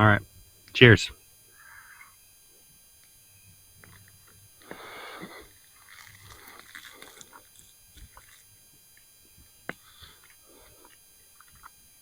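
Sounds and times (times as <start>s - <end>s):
biting and chewing: 3.8s - 9.0s, 9.7s - 11.9s.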